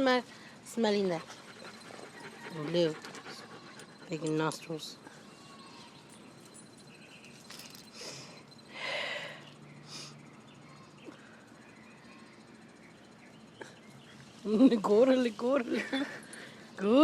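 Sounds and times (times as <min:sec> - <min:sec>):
dogs huffing: 0:01.0 - 0:04.6.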